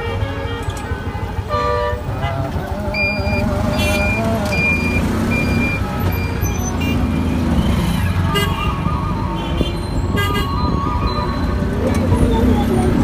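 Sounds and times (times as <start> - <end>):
horn toots: 0.0 - 4.3.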